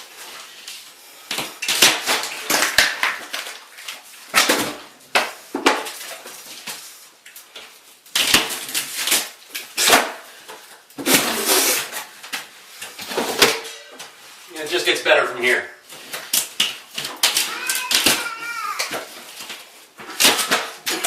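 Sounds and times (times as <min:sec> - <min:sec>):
ceiling debris crashing down: 0:17.2 - 0:19.0.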